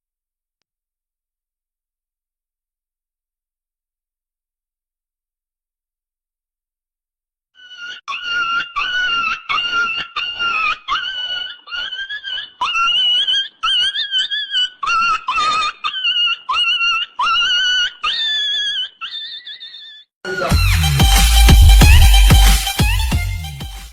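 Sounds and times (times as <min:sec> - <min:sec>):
animal whining calls: 0:07.6 - 0:20.5.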